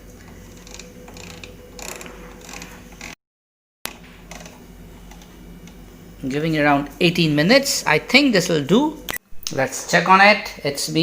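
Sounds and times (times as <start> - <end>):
oven dial ratcheting clicks: 0.6 - 3.2.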